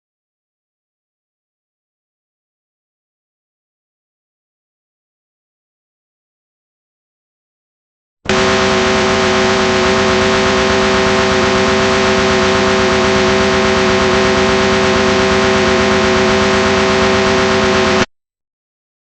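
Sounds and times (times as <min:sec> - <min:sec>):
low tone hum: 0:08.3 - 0:18.1.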